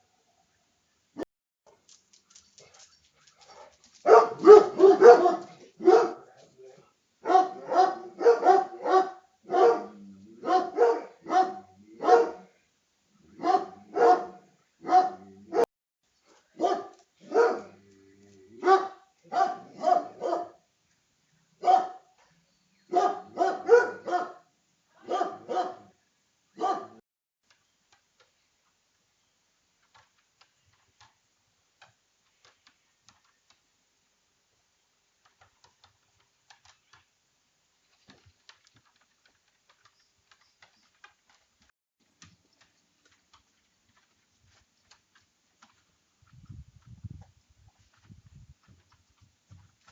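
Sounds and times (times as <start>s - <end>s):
dog barking: 3.5s - 6.3s, 7.2s - 12.6s, 13.3s - 15.7s, 16.6s - 17.8s, 18.6s - 20.6s, 21.6s - 22.2s, 22.9s - 26.0s, 26.6s - 27.0s.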